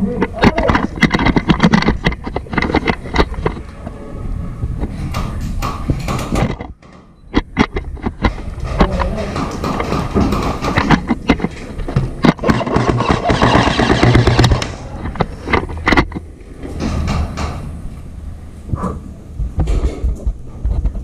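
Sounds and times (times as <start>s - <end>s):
rustling noise: 0.0s - 21.0s
sharp clicks and knocks: 0.2s - 3.9s, 4.8s - 17.8s
low rumble: 3.3s - 6.0s, 13.5s - 21.0s.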